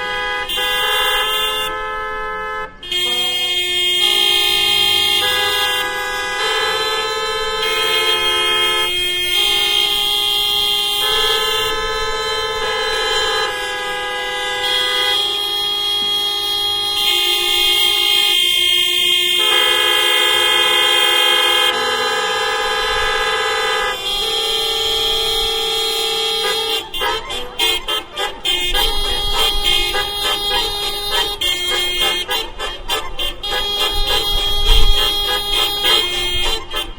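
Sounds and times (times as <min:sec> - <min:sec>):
car horns honking: 0:00.0 - 0:36.9.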